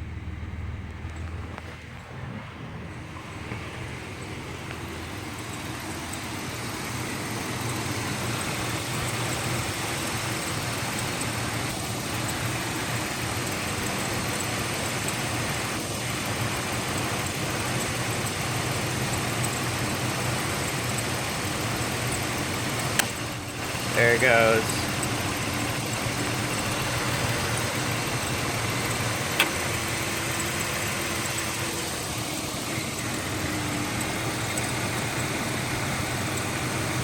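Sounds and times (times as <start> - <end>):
truck engine idling: 0.0 - 37.0.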